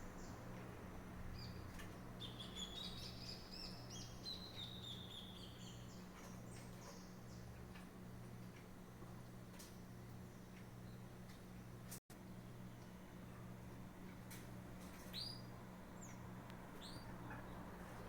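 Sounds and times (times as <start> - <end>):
small birds chirping: 1.3 - 7.8, 14.8 - 18.0.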